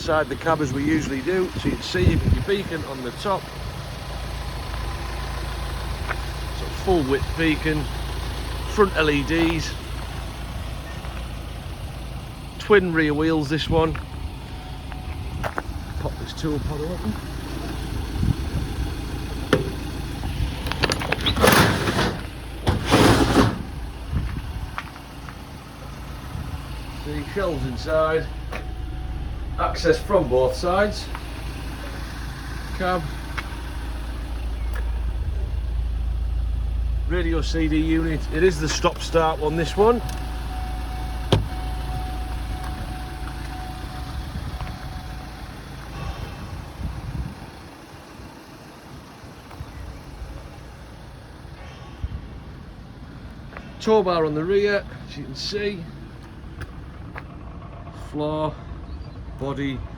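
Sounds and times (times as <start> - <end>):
van doors opening with rush: 0.0 - 57.9
diesel engine idling: 0.0 - 59.9
latch clicks: 19.5 - 23.6.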